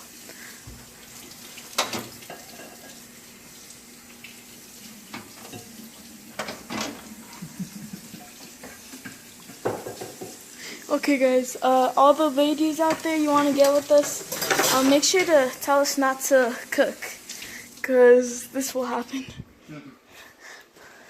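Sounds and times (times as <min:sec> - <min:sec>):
dishes and utensils clattering: 0:01.7 - 0:03.0, 0:05.1 - 0:05.8, 0:06.4 - 0:10.4, 0:12.8 - 0:15.6.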